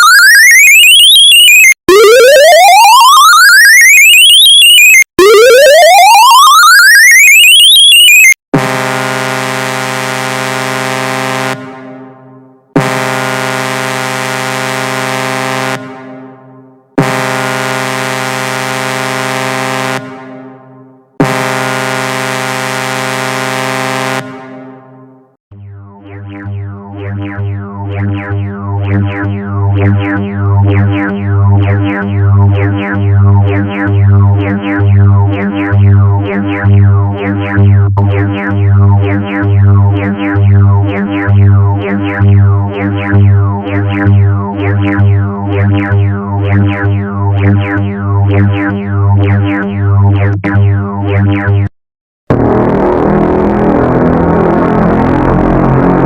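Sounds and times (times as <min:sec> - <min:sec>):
synthesized alert tone pulsing: 0:00.0 - 0:08.4
harsh alarm sound: 0:00.0 - 0:12.2, 0:12.8 - 0:24.8, 0:25.6 - 0:51.7, 0:52.3 - 0:56.0.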